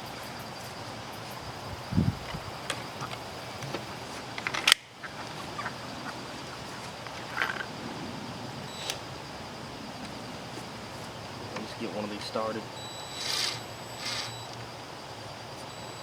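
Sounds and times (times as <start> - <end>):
chickens clucking: 5.0 - 7.6.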